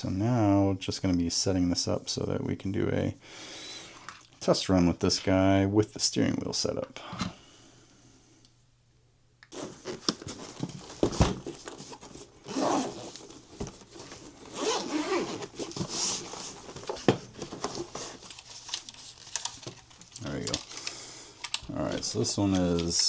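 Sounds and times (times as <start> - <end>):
equipment scraping and rustling: 9.5 - 20.9.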